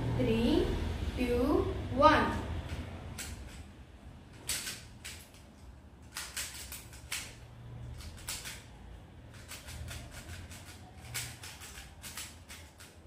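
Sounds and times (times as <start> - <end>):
puzzle cube clicking and rattling: 2.7 - 3.7, 4.3 - 13.0.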